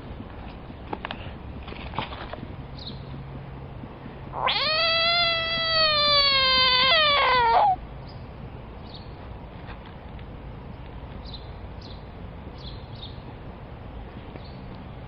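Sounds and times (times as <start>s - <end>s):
frog distress scream: 4.3s - 7.8s.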